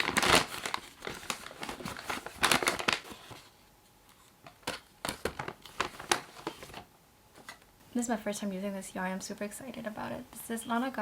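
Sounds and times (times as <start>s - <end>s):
packaging crinkling and rustling: 0.0s - 7.6s.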